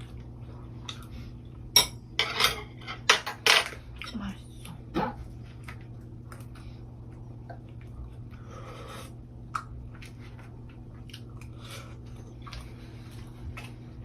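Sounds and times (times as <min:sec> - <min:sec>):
steady low hum: 0:00.0 - 0:14.0
person chewing food: 0:05.5 - 0:14.0.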